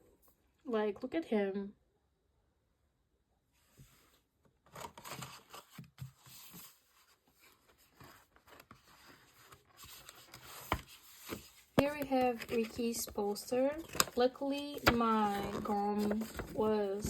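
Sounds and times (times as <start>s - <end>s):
paper and plastic crinkling: 4.7s - 17.0s.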